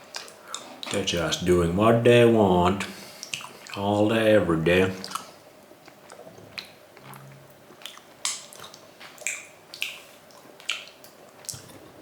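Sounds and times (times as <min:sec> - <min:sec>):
wet chewing mouth smacks: 0:03.2 - 0:03.8, 0:05.0 - 0:11.8.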